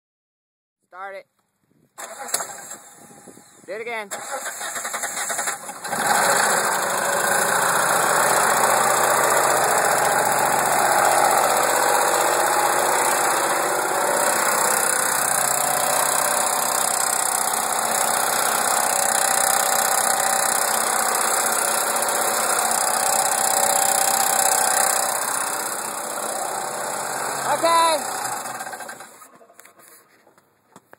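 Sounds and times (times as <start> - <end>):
mechanical noise from engine: 2.0 - 29.3
car engine running: 4.7 - 29.2.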